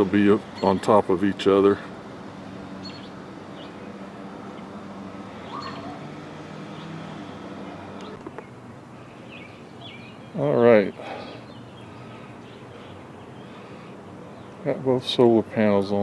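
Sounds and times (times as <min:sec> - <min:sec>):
steady low hum: 0:00.0 - 0:16.0
faint bird chirps: 0:05.4 - 0:06.1, 0:08.0 - 0:14.6.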